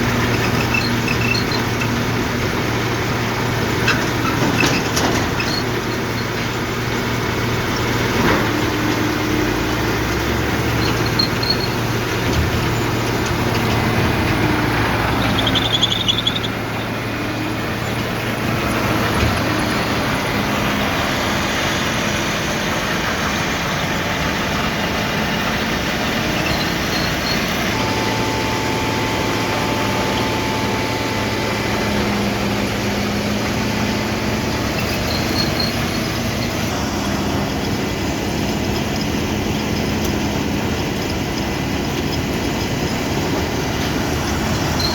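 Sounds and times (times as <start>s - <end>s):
tractor engine hum: 0.0s - 44.9s
tub grinder running: 0.0s - 44.9s.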